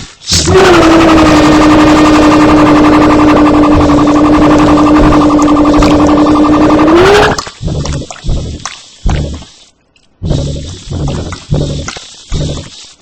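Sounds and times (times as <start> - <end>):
distorted tone with rattling flutter: 0.4 - 9.5.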